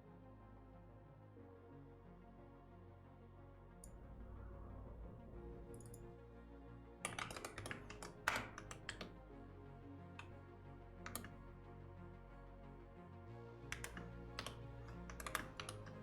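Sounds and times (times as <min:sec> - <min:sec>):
soft background music: 0:00.0 - 0:16.0
keyboard typing: 0:03.8 - 0:06.1, 0:07.1 - 0:09.2, 0:11.1 - 0:11.4, 0:13.8 - 0:16.0.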